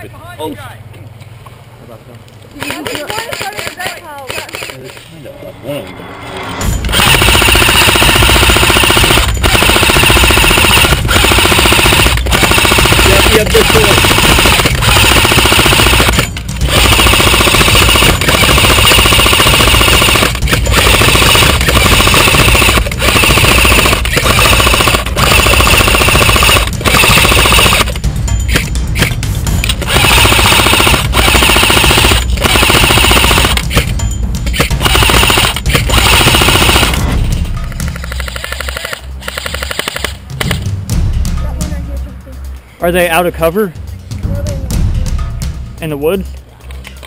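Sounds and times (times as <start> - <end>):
airsoft gun rapid fire: 2.6 - 5.0, 6.9 - 37.2, 37.8 - 40.6.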